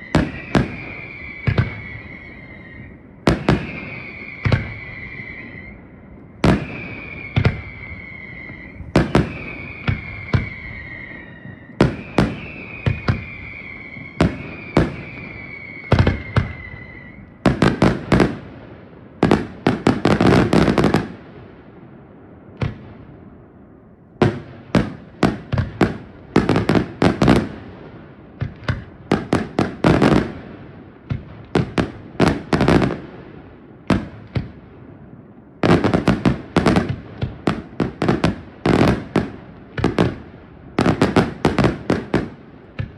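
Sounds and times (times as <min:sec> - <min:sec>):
firework whistles: 0:00.0 - 0:18.5
firework bangs: 0:00.0 - 0:42.9.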